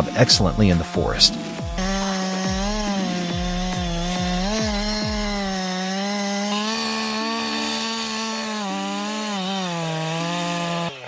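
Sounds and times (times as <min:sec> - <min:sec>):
chainsaw cutting wood: 0:00.0 - 0:11.0.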